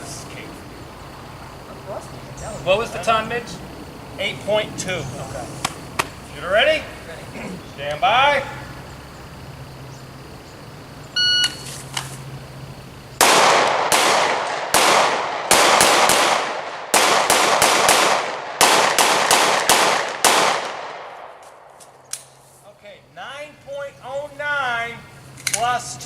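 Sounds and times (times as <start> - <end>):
pistol shots: 13.2 - 21.4.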